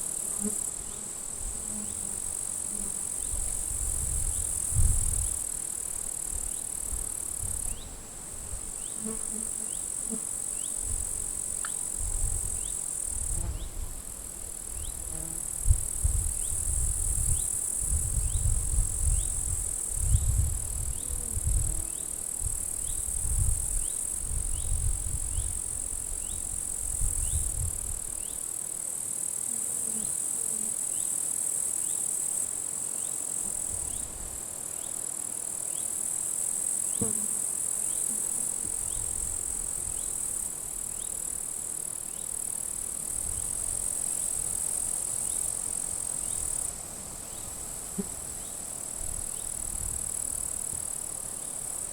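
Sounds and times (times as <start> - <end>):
wind buffeting microphone: 3.7 - 5.4, 15.6 - 21.8, 22.4 - 25.6.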